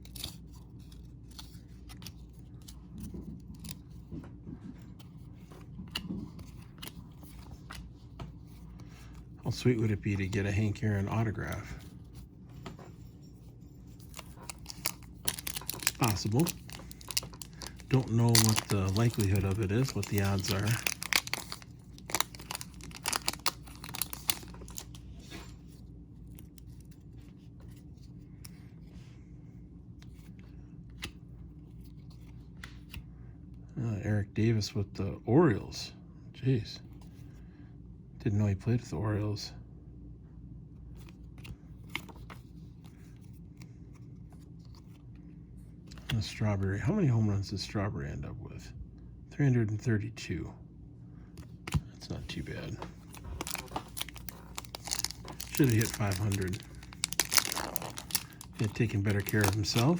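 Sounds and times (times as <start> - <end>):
cards clicking and rustling: 0.0 - 12.2, 13.8 - 28.6, 51.4 - 59.9.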